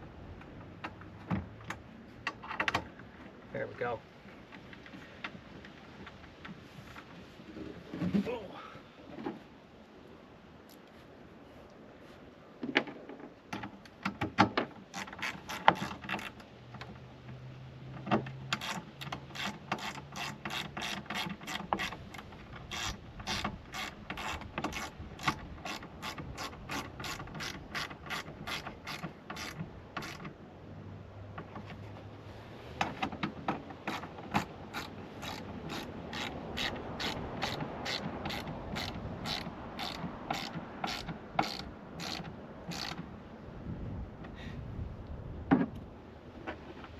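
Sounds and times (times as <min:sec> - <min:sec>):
ratchet wrench clicking: 0:18.6 - 0:30.2, 0:33.9 - 0:43.0.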